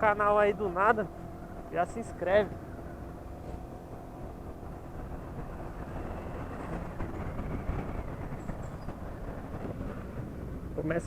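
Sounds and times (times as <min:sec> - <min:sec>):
scooter engine and exhaust: 0:00.0 - 0:10.9
wind on microphone: 0:02.4 - 0:11.0.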